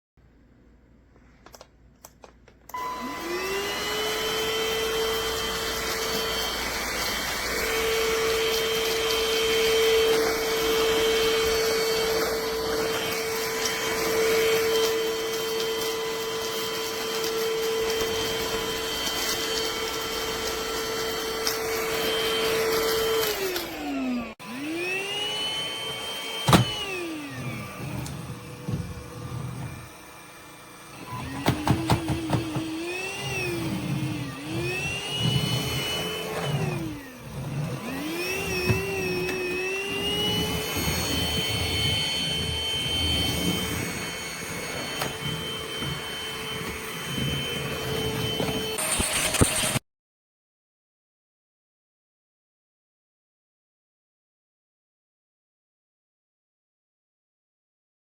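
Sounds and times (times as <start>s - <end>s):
click: 1.4s - 2.8s
vacuum motor whining: 2.7s - 49.8s.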